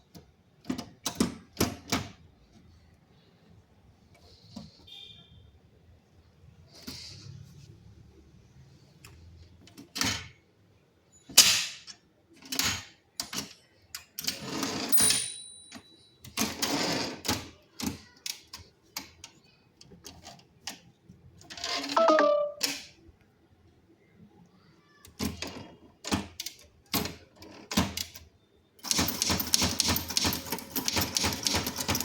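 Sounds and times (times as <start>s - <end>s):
typewriter key strikes: 28.8s - 32.0s
typewriter mechanism rasping: 28.8s - 32.0s.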